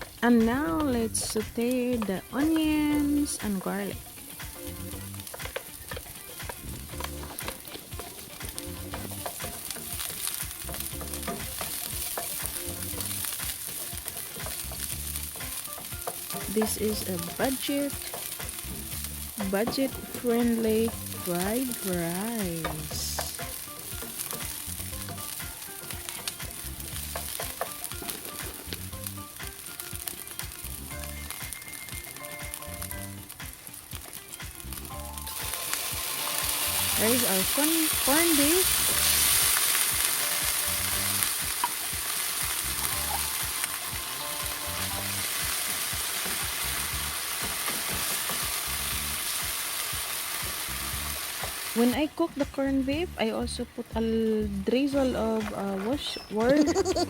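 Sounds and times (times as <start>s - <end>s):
onions sizzling in oil: 0.0s - 57.0s
stirring scrapes and taps in a pan: 4.3s - 21.9s, 22.6s - 30.7s, 38.8s - 48.7s.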